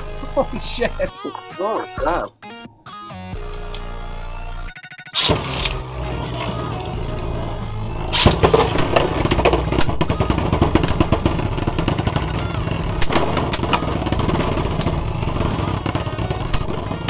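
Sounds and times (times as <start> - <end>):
sharp hit of spinning tops: 5.2 - 17.0
spinning tops rattling and grinding: 5.2 - 17.0.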